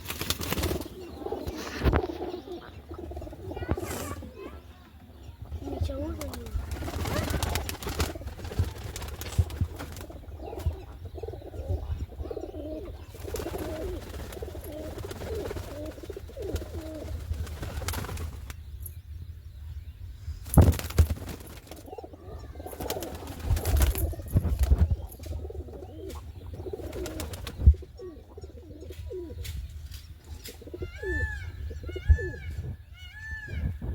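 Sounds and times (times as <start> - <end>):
wings flapping: 0.0 - 2.4, 5.6 - 10.8, 13.1 - 18.6, 20.4 - 28.1
pigeons cooing: 0.0 - 18.5, 20.4 - 29.6, 30.3 - 33.9
high chirping calls: 0.5 - 33.9.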